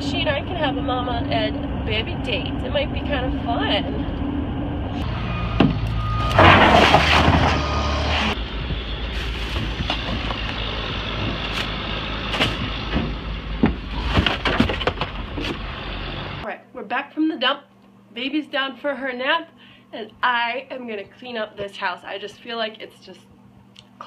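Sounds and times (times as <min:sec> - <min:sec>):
vehicle road and engine rumble: 0:00.0 - 0:16.5.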